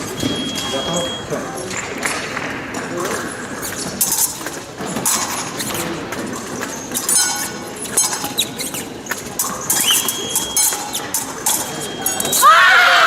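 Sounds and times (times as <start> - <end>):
high electronic beep: 0.0 - 1.4, 9.7 - 12.4
shoes squeaking and stamping: 3.2 - 12.5.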